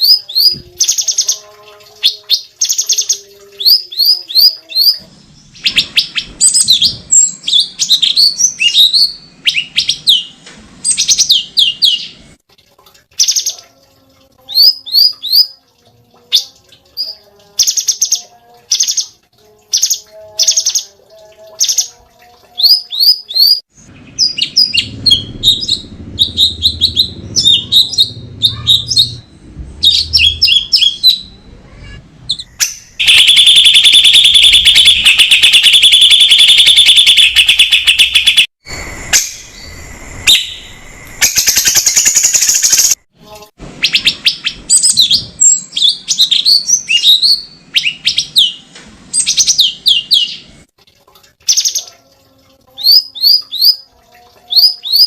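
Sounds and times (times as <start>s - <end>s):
songbird chirping and trilling: 0.0s - 12.2s, 13.1s - 38.5s, 39.2s - 43.0s, 43.8s - 50.5s, 52.6s - 55.0s
low rumble: 23.8s - 30.8s, 38.7s - 41.2s.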